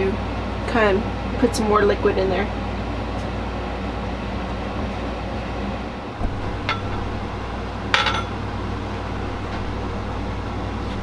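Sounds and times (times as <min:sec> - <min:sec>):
steady low hum: 0:04.7 - 0:11.0
dishware clinking: 0:06.2 - 0:11.0
soft thump: 0:06.2 - 0:11.0.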